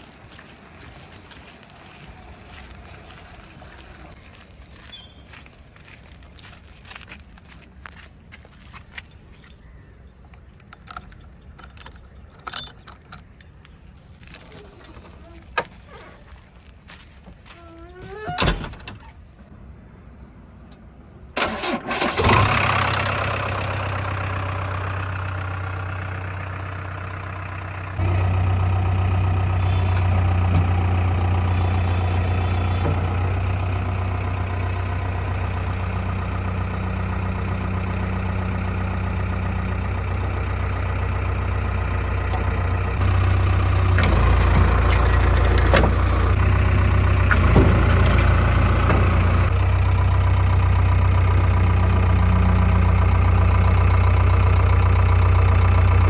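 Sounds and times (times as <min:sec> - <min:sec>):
diesel engine starting and idling: 0:00.0 - 0:05.9, 0:21.3 - 0:56.0
knocks and clanks: 0:42.3 - 0:49.5.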